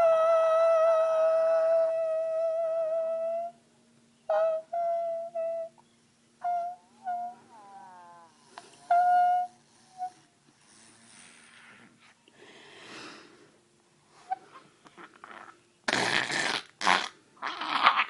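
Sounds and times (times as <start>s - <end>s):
person humming high squeaks: 0.0s - 3.6s, 4.3s - 5.8s, 6.4s - 10.3s, 14.2s - 16.6s
faint breathy hissing: 6.9s - 15.2s.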